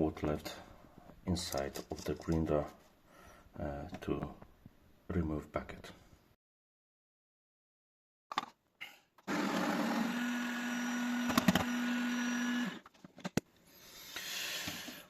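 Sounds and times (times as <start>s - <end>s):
coffee grinder motor grinding: 9.2s - 12.9s, 14.0s - 15.0s.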